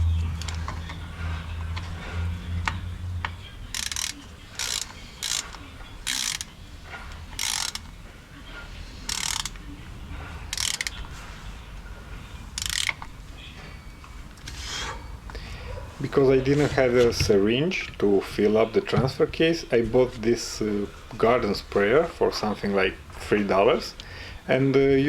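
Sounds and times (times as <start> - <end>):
ratchet wrench clicking: 3.7 - 6.5, 7.3 - 7.9, 9.1 - 9.6, 10.5 - 11.0, 12.6 - 13.0.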